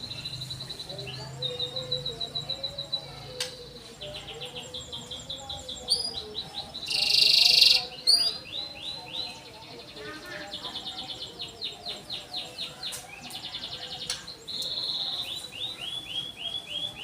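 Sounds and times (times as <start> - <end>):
canary singing trills: 0.0 - 17.0
harsh buzzing bird phrase: 6.8 - 8.4.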